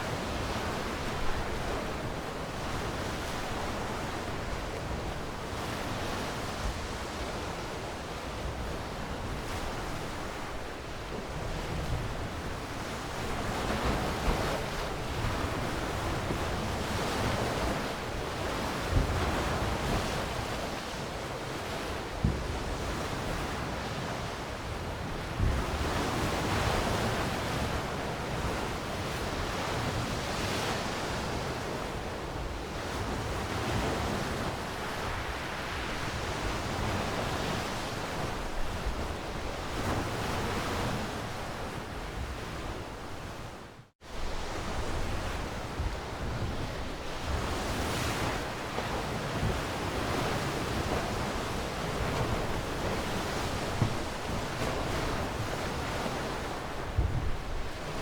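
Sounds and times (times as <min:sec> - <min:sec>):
sea waves washing on shore: 0:00.0 - 0:58.0
wind thumps on microphone: 0:52.0 - 0:55.6, 0:56.8 - 0:58.0.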